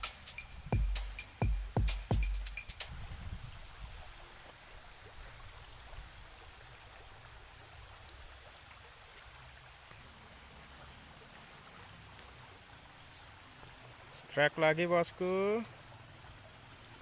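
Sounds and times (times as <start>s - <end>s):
faint flowing water: 2.5s - 17.0s.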